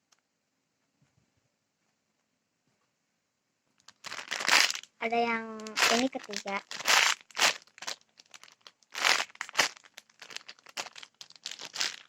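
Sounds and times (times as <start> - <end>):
squishy toy crinkling and rustling: 3.8 - 12.0.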